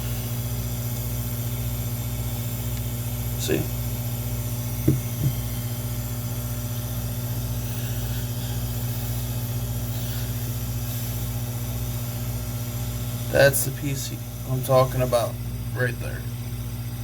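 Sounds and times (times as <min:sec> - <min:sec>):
short knocks: 0:04.9 - 0:05.4.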